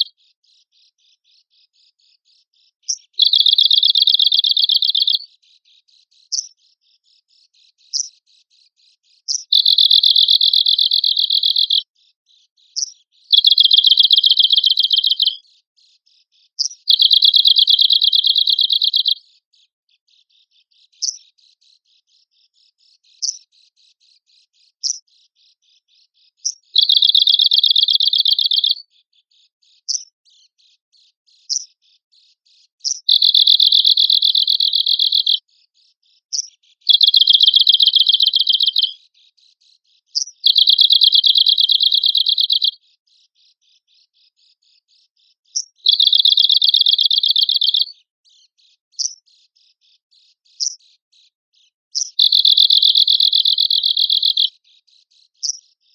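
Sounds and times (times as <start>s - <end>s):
bird buzzing trills: 13.3s - 15.4s, 16.9s - 19.1s, 36.9s - 38.9s, 52.0s - 54.4s
sharp bird call notes: 36.9s - 38.9s.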